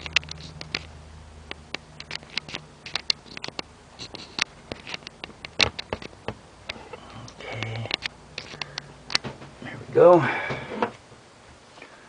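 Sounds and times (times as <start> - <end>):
handling clicks and knocks: 1.7 - 9.6.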